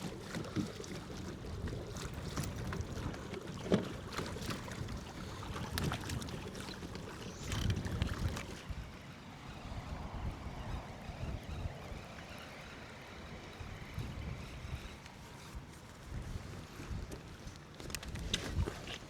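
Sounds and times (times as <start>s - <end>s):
water sloshing against kayak hull: 0.0s - 9.0s, 14.4s - 19.0s
wind on microphone: 4.0s - 19.0s.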